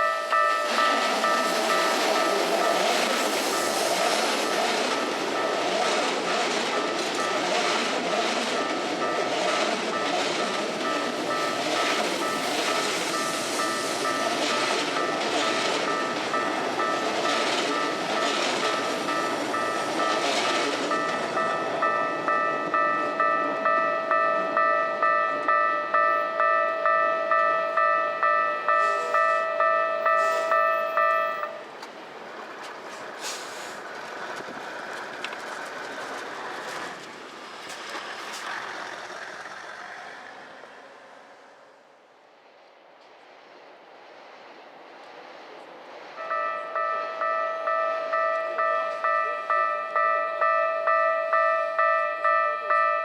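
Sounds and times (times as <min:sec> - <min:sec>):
level crossing warning bell: 0:00.0 - 0:31.7, 0:46.2 - 0:53.0
street background: 0:00.0 - 0:53.0
train passing: 0:00.0 - 0:53.0.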